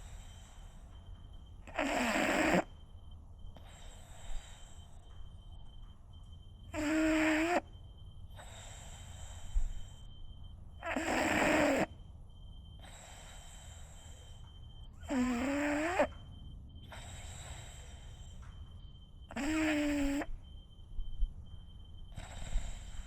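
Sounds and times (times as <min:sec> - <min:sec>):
soft breaths: 0:00.0 - 0:06.4, 0:07.4 - 0:23.0
dog snoring: 0:01.6 - 0:02.7, 0:06.7 - 0:07.7, 0:10.8 - 0:12.0, 0:15.0 - 0:16.2, 0:16.9 - 0:18.1, 0:19.3 - 0:20.3, 0:22.1 - 0:23.0.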